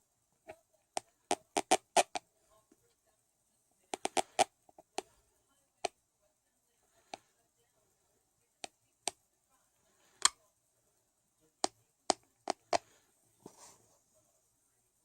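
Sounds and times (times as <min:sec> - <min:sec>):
teeth grating: 0:04.0 - 0:04.5.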